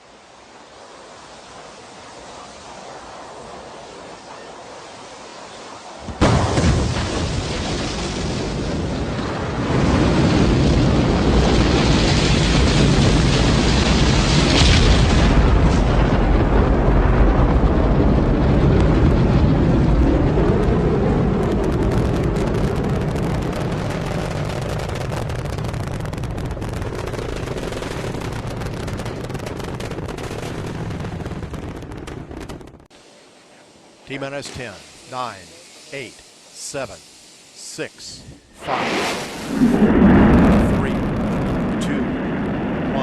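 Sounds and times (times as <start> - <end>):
rocket launch roar: 6.0 - 32.7, 38.6 - 43.0.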